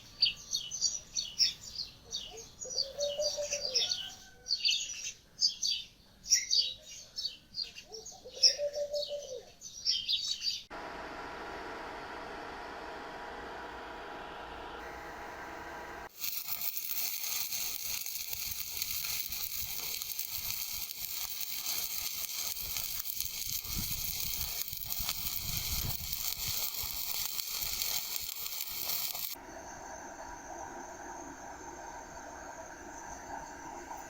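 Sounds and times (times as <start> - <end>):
welding arc crackling and sizzling: 14.8 - 29.4.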